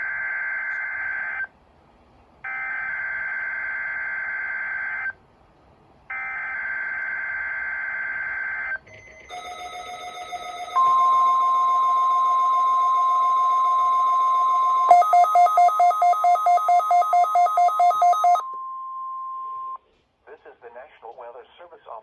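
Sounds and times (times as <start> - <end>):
raspy digital data tones: 10.8 - 18.4.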